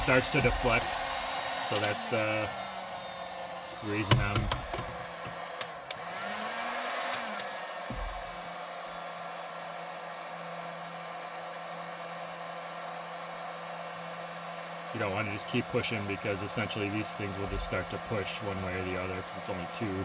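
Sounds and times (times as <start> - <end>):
heat gun blowing: 0.0 - 20.0
low thump: 7.9 - 8.4.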